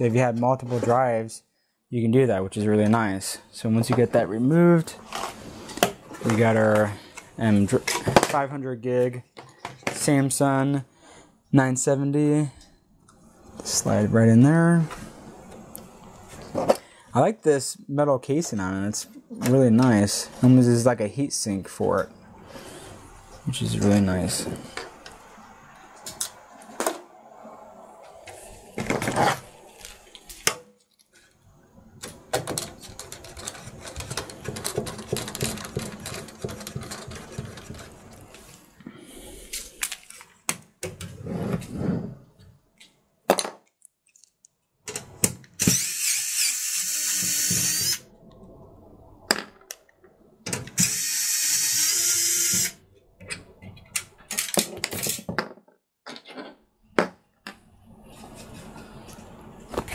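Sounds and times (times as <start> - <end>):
electric screwdriver running: 45.6 - 48.0, 50.8 - 52.8.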